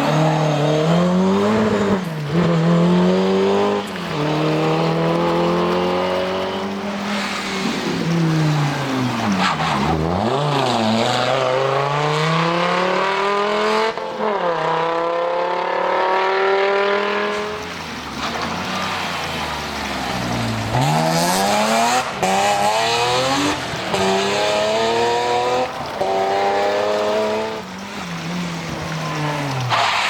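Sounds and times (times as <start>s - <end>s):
rally car engine at full throttle: 0.0s - 30.0s
tyre and road noise: 0.0s - 30.0s.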